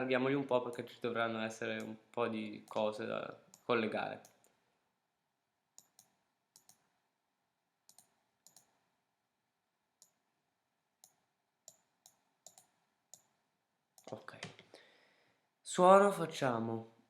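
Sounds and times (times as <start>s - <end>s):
computer mouse clicks: 5.8s - 6.9s, 7.9s - 8.8s, 11.0s - 13.4s.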